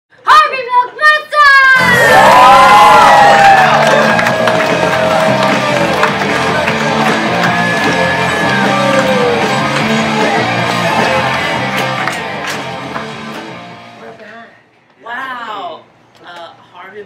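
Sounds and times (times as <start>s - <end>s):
rock music: 1.8s - 14.1s.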